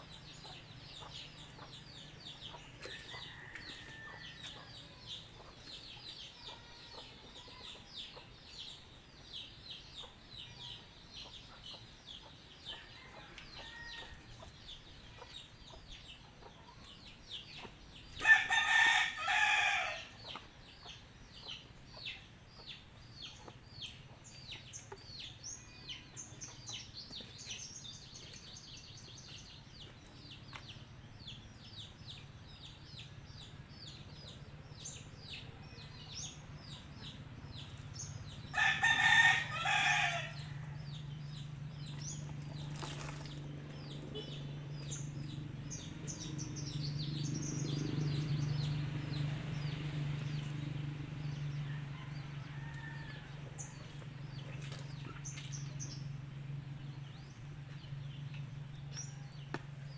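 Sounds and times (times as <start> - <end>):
chicks chirping: 0.0 - 13.6
rooster crowing: 18.2 - 20.2, 38.5 - 40.9, 51.6 - 53.5.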